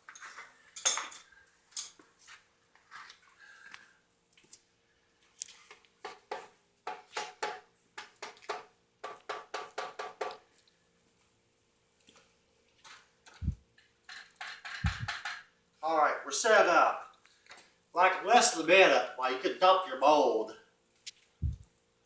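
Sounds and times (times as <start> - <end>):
metal clinks and knocks: 14.1 - 15.4.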